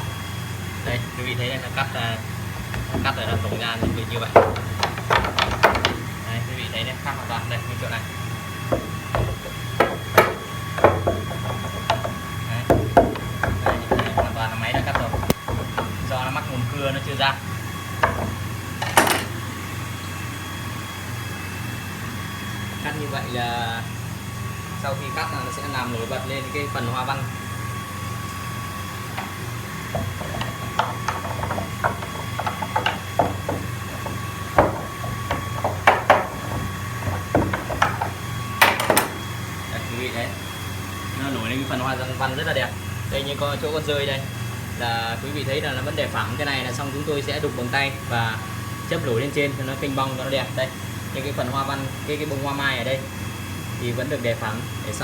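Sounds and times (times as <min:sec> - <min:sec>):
steady low hum: 0:00.0 - 0:20.0
wooden knocks and clacks: 0:02.5 - 0:06.2, 0:08.7 - 0:16.3, 0:18.0 - 0:19.4, 0:29.1 - 0:39.3.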